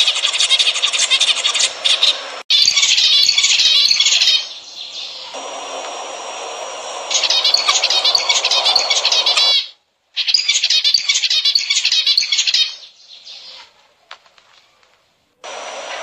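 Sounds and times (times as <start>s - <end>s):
finches chirping: 0.0s - 5.7s, 6.9s - 13.7s.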